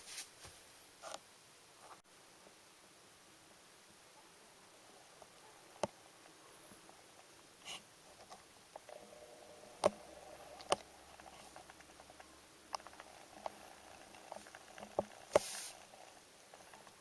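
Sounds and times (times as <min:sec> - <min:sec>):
faint steady hum: 0:00.0 - 0:17.0.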